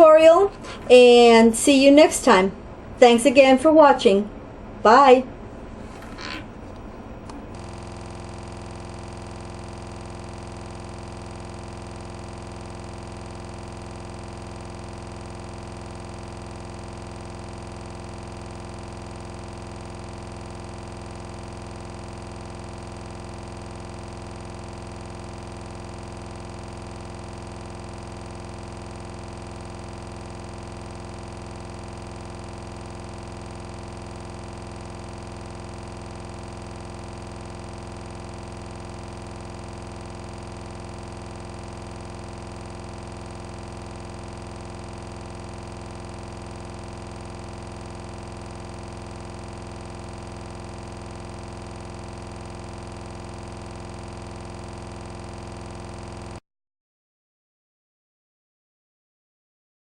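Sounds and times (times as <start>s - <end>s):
speech: 0.0s - 5.3s
steady multi-pitch hum: 0.0s - 56.4s.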